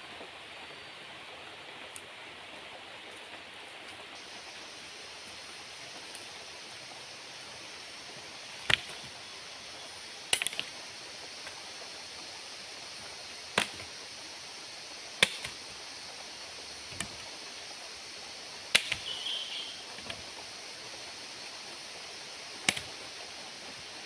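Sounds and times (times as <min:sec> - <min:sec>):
steady background hiss: 0:00.0 - 0:24.0
sharp knocks or snaps: 0:15.2 - 0:15.6, 0:18.7 - 0:19.1, 0:22.6 - 0:22.9.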